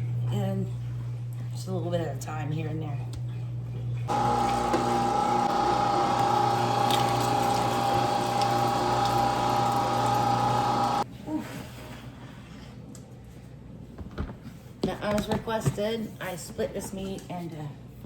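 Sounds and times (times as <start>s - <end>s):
meat grinder motor whining: 4.1s - 11.0s.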